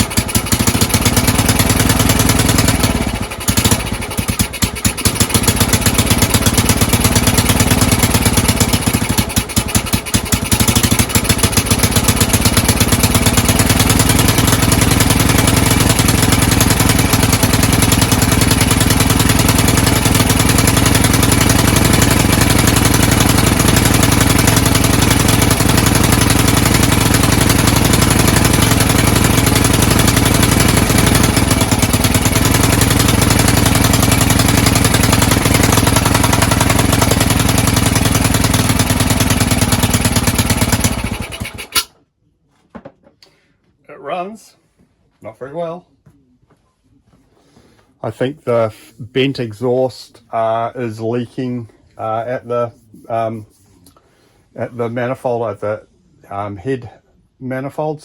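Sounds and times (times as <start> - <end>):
motorcycle engine running unevenly: 0.0 - 41.9.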